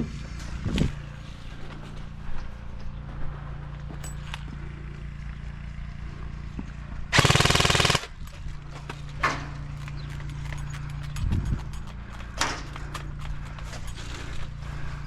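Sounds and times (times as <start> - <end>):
airsoft gun full-auto burst: 7.1 - 8.1.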